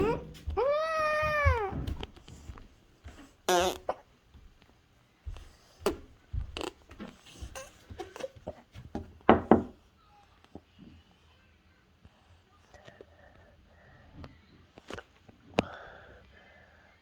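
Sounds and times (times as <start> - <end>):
knocks and thumps: 0.0 - 2.6, 8.8 - 9.8.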